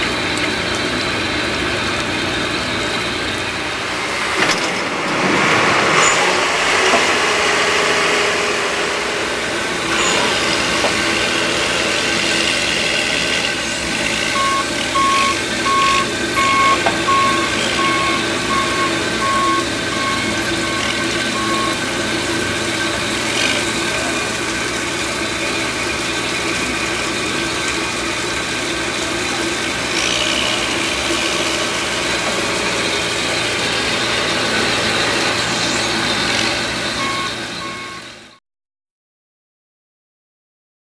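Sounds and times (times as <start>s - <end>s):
heavy diesel equipment running: 0.0s - 38.4s
backup alarm beeping: 14.3s - 21.8s, 37.0s - 38.0s.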